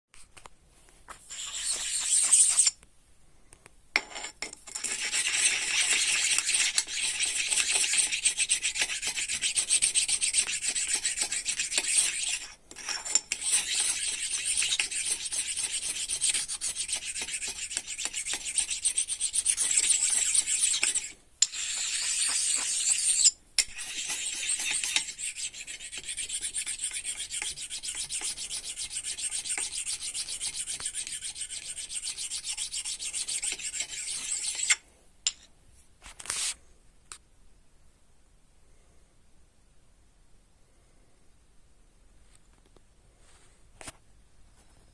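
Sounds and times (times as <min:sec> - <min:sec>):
polishing stone rubbing: 0:01.2 - 0:02.8, 0:04.0 - 0:35.4.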